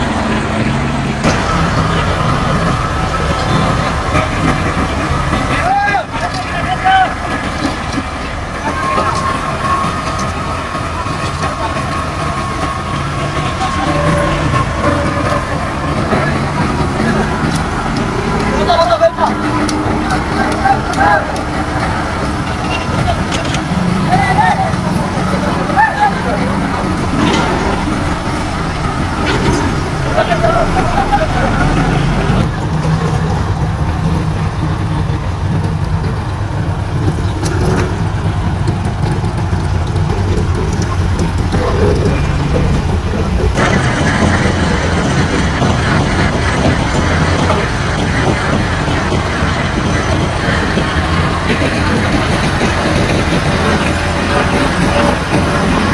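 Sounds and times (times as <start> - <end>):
diesel engine droning: 0.0 - 55.9
heavy machinery running: 0.0 - 55.9
sustained high whine: 0.0 - 55.9.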